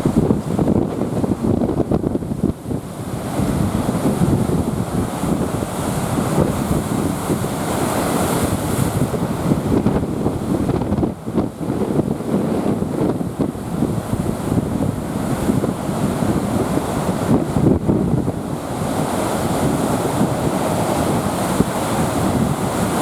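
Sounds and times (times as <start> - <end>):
heavy surf breaking: 0.0 - 23.0
hissing wash of white water: 0.0 - 23.0
wind buffeting microphone: 0.0 - 23.0.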